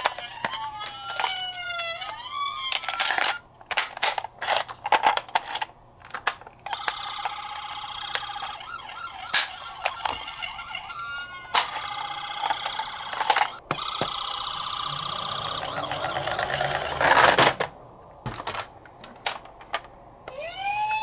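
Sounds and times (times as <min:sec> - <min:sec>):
toy electronic siren wailing: 0:00.0 - 0:03.4, 0:06.6 - 0:17.6, 0:20.3 - 0:21.0
warbling electronic siren tone: 0:13.7 - 0:17.2.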